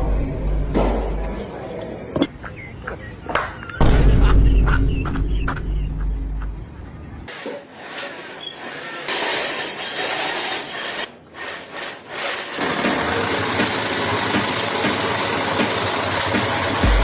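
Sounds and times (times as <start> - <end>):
work tools hissing: 7.3 - 16.9.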